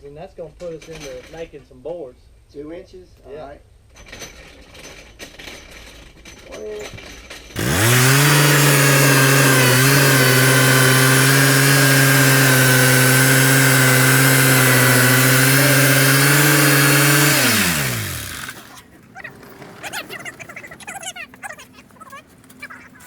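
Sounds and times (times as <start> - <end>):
sawmill motor spinning: 7.6 - 18.8.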